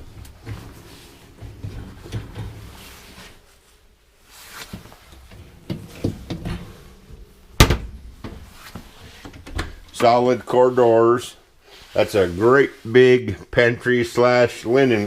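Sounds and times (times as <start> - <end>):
cabinet doors knocking and rattling: 5.6 - 6.7
door bang: 7.6 - 8.6.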